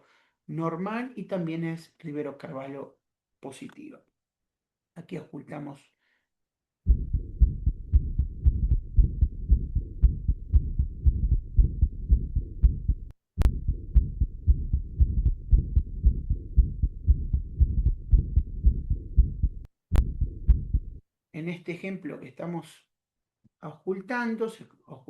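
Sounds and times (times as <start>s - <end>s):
heart murmur: 6.9s - 21.0s
heartbeat through stethoscope: 6.9s - 21.0s.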